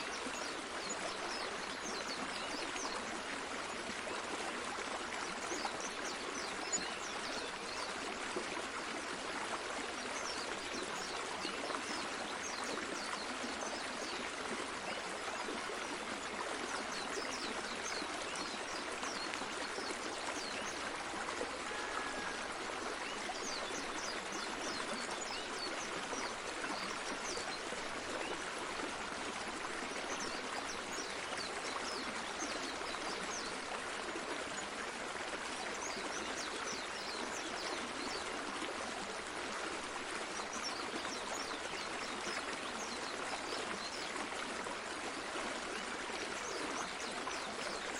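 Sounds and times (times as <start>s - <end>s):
stream of running water: 0.0s - 47.9s.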